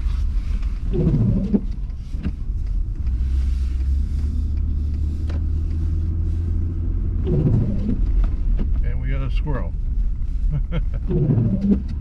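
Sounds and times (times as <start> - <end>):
car rumbling while driving: 0.0 - 12.0.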